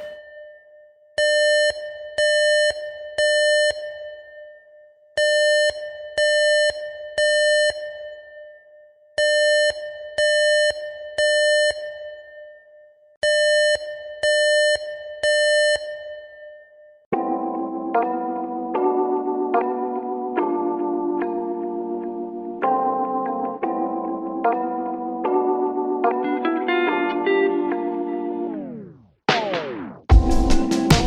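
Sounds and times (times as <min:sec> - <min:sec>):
synthesizer music: 0:17.2 - 0:31.0.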